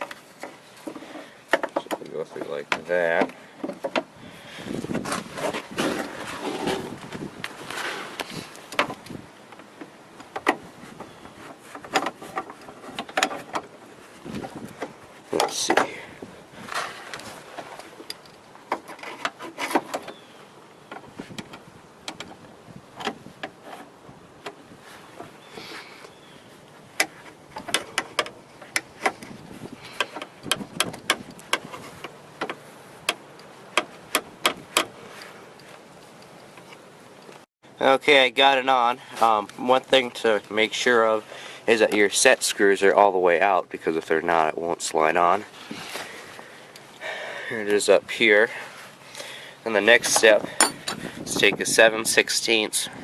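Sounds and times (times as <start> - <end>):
parts clicking and knocking: 0.0 - 4.1, 8.2 - 13.8, 16.7 - 20.2, 20.8 - 37.4, 49.9 - 51.1
handling noise: 0.0 - 37.5, 45.0 - 51.8.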